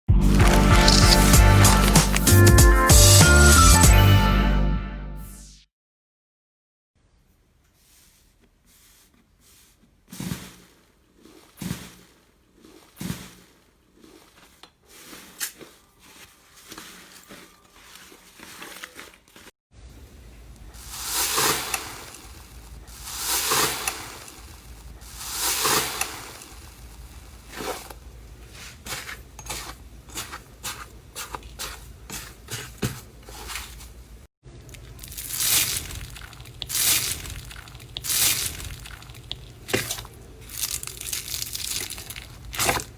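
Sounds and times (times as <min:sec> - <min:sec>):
slime squishing and crackling: 0:00.2 - 0:02.4, 0:10.2 - 0:19.5, 0:20.6 - 0:34.0, 0:34.6 - 0:42.9.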